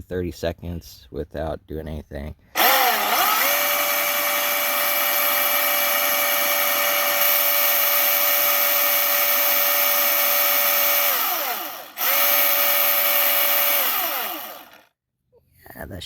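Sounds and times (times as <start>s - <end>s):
battery chainsaw motor and chain whine: 2.6s - 14.9s.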